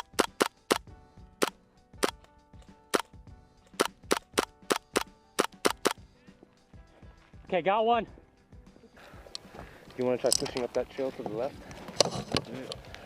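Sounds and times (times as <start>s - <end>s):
airsoft gun shots: 0.0s - 2.2s, 3.8s - 6.0s.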